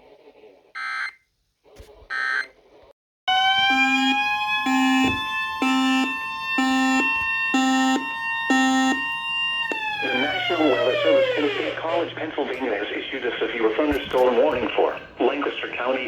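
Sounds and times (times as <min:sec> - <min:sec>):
loud alert tones: 0:03.6 - 0:09.1.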